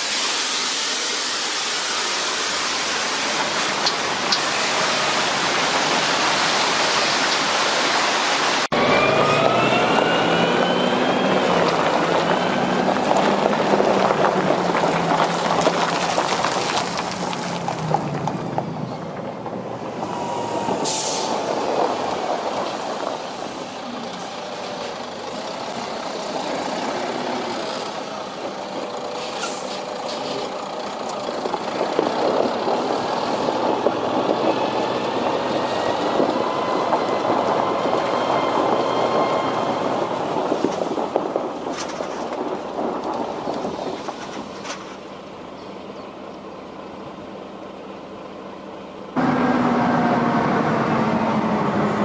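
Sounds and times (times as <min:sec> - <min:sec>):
heavy truck running: 0:00.0 - 0:52.0
short high hisses: 0:20.2 - 0:21.4.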